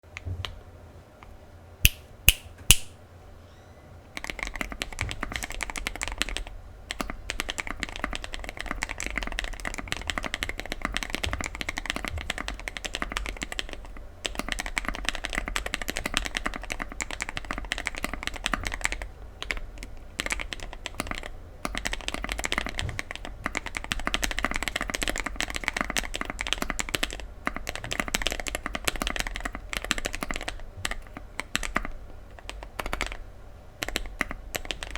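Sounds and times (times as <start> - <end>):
sharp clicks: 1.9 - 3.0
mechanical keyboard typing: 4.1 - 33.2, 33.8 - 34.9.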